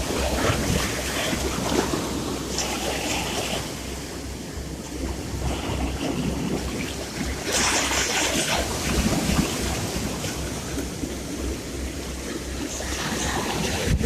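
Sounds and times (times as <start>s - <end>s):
sea waves washing on shore: 0.0s - 14.0s
wave breaking: 0.0s - 14.0s.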